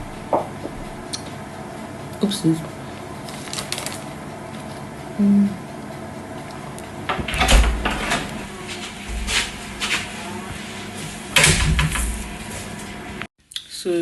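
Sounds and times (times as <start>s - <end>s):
low thuds: 7.2s - 10.1s.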